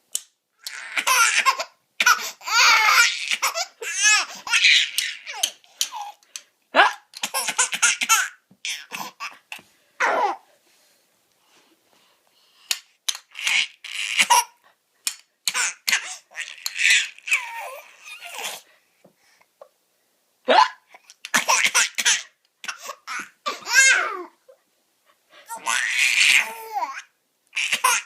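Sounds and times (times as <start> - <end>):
baby laughing: 0.6 - 6.2, 13.1 - 14.6, 15.4 - 18.6, 25.5 - 28.0.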